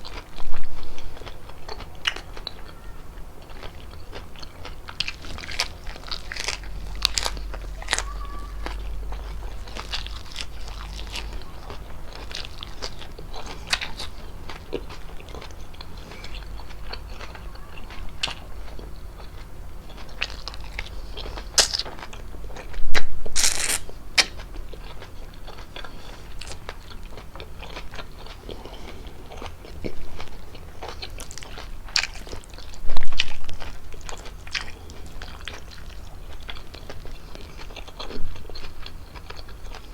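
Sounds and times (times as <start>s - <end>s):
person chewing food: 0.0s - 39.9s.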